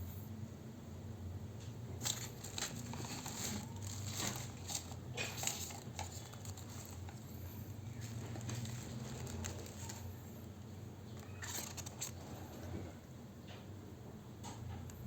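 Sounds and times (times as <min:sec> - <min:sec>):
packaging clicks and crinkles: 0:02.0 - 0:12.7.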